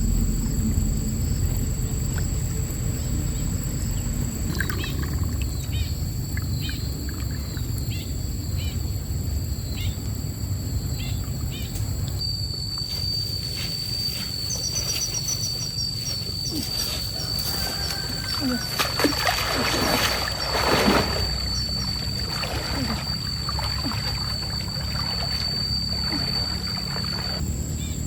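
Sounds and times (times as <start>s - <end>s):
steady high tone: 21.1s - 27.4s.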